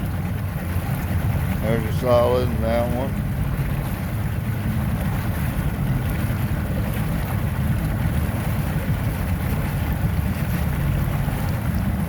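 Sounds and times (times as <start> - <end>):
boat motor rumble: 0.0 - 12.0
wind buffeting microphone: 0.0 - 12.0.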